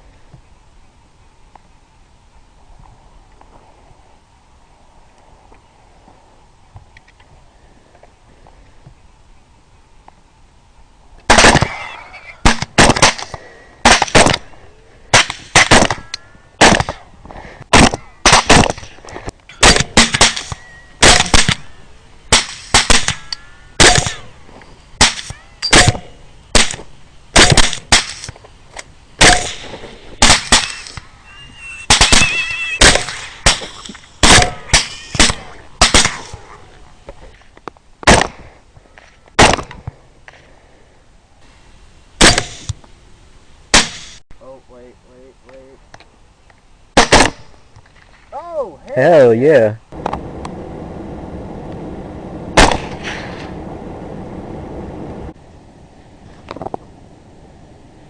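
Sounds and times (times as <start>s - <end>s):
rifle shots: 11.3s - 17.0s, 17.7s - 19.0s, 19.6s - 24.4s, 25.0s - 28.3s, 29.2s - 31.1s, 31.8s - 36.5s, 38.0s - 38.5s, 42.2s - 42.7s, 43.7s - 44.2s, 47.0s - 47.6s, 52.6s - 53.2s
high-pitched squeal: 30.7s - 33.9s.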